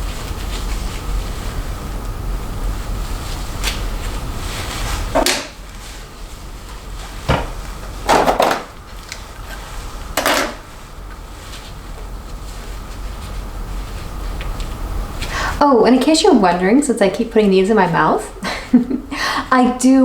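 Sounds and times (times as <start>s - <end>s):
steady low hum: 0.0s - 20.0s
plastic hair rollers rustling and clattering: 7.3s - 10.8s.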